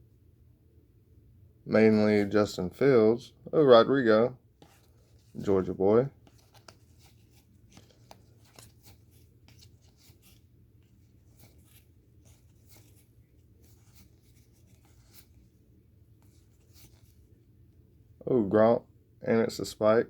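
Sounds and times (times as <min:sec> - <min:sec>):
low steady hum: 0:00.0 - 0:20.0
trading cards flipped by hand: 0:04.6 - 0:15.6, 0:16.2 - 0:17.3.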